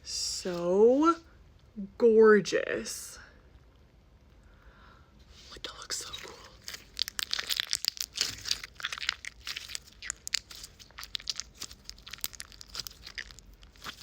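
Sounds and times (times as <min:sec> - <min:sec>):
slime squished by hand: 0:06.0 - 0:14.0.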